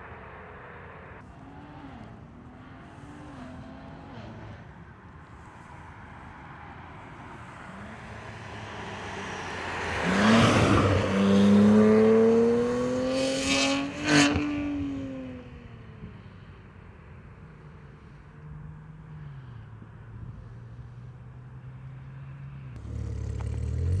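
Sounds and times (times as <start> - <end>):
car accelerating past: 7.3 - 15.6, 22.7 - 24.0.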